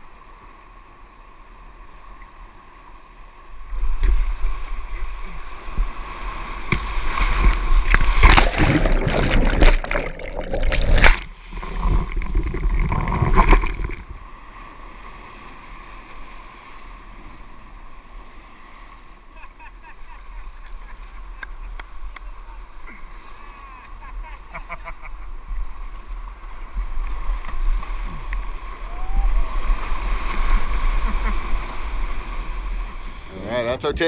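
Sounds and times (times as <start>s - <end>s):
water rushing and splashing: 3.4s - 19.1s, 25.6s - 34.0s.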